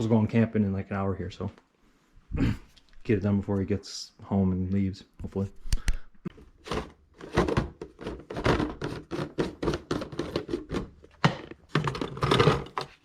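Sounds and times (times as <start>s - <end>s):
tools clicking and clattering: 7.8s - 13.0s.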